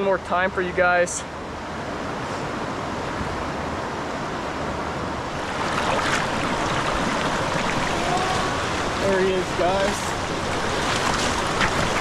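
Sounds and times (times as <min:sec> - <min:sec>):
river current rushing: 0:00.0 - 0:12.0
water splashing: 0:05.3 - 0:12.0.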